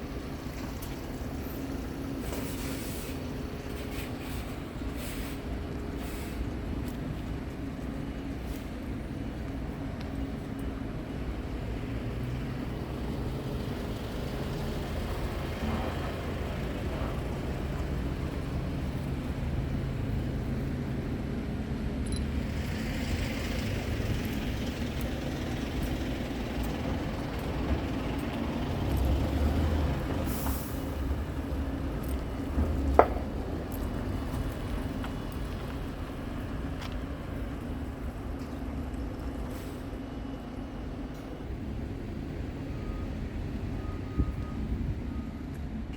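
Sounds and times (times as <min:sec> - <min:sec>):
truck diesel engine running: 0:11.0 - 0:45.4.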